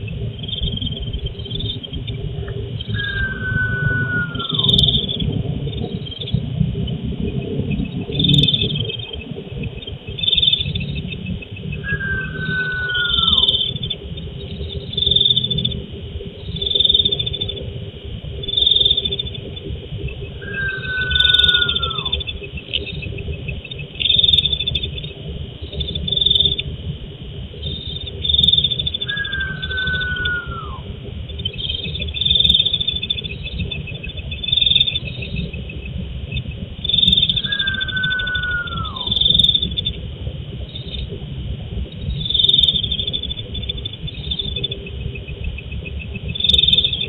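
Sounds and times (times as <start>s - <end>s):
insects chirping in bursts: 0.0s - 47.0s
low rumble: 0.0s - 47.0s
long falling whistle-like call: 2.9s - 5.2s, 11.8s - 13.8s, 20.4s - 22.3s, 29.0s - 30.9s, 37.4s - 39.2s.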